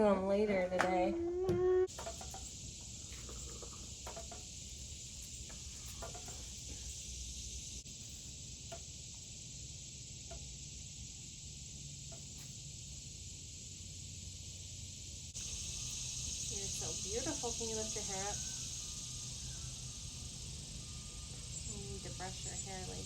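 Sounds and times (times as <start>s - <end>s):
insects droning: 0.0s - 23.0s
faint clicks and rustles: 1.9s - 7.4s.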